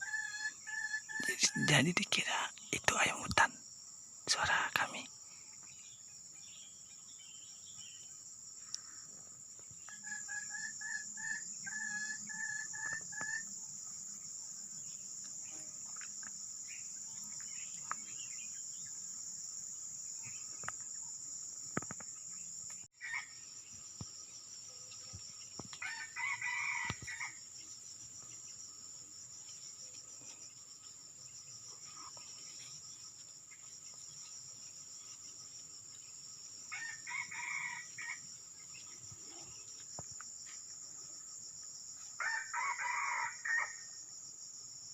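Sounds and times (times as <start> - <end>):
junglefowl crowing: 0.0 - 1.8, 23.0 - 23.3, 25.8 - 27.4, 36.7 - 38.2, 42.2 - 43.8
insects droning: 0.0 - 44.9.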